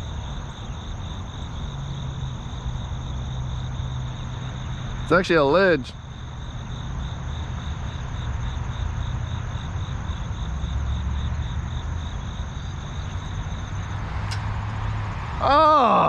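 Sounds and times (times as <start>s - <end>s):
insect trill: 0.0s - 16.0s
steady low rumble: 9.9s - 16.0s.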